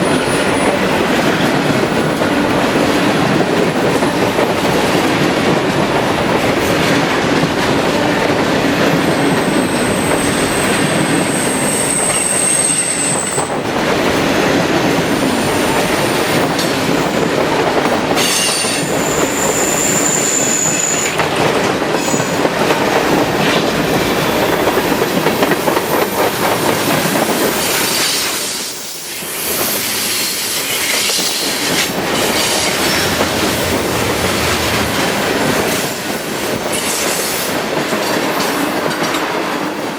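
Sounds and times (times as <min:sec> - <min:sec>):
train wheels clacking over rail joints: 0:00.0 - 0:39.9
high-pitched wheel squeals: 0:09.5 - 0:13.6, 0:18.2 - 0:21.2.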